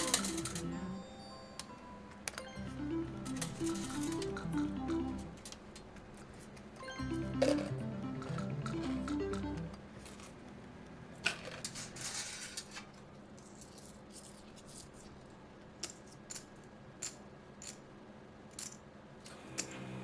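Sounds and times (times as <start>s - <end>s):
chips clinking and rattling: 0.0s - 0.8s, 3.3s - 4.7s
faint room hum: 0.0s - 20.0s.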